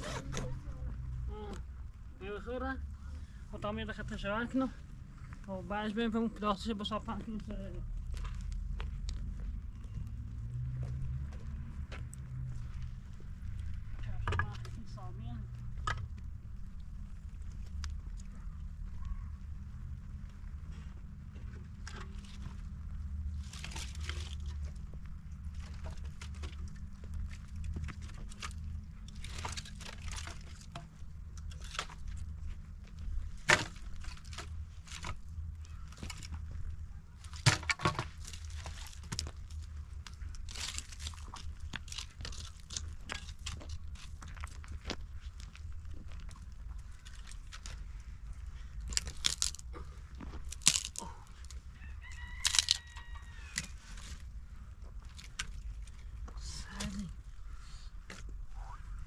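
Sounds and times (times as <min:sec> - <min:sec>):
low steady rumble: 0:00.0 - 0:59.0
crinkling handling noises: 0:06.9 - 0:59.0
rooster crowing: 0:51.7 - 0:53.8.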